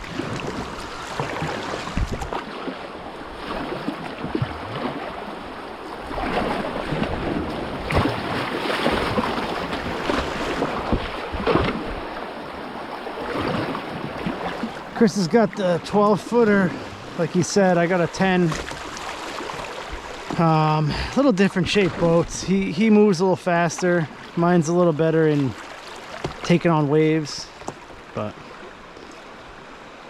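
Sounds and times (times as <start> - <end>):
water splashes: 0.0 - 30.0.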